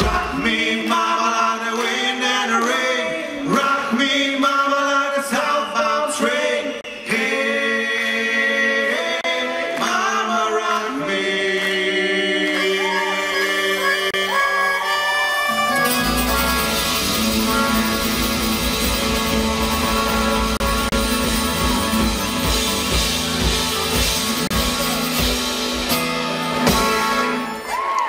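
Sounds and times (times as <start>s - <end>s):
sliding vocal harmonies: 0.0s - 14.9s
strummed guitar and bass: 14.3s - 27.7s.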